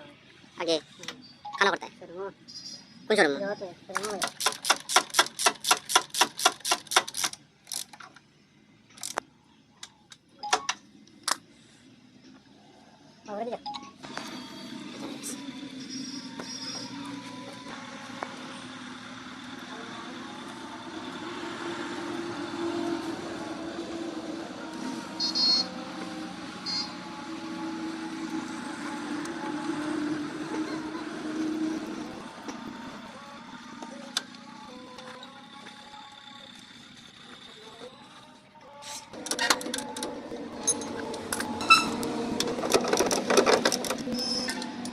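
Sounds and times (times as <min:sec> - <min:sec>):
low mechanical hum: 0:00.0 - 0:44.9
high-pitched electronic beeps: 0:01.3 - 0:01.9, 0:25.2 - 0:25.8, 0:26.6 - 0:27.0.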